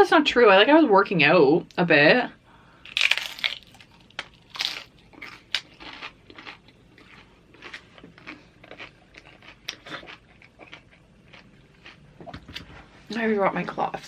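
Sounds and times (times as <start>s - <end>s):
crunching and chewing chips: 2.8s - 12.7s.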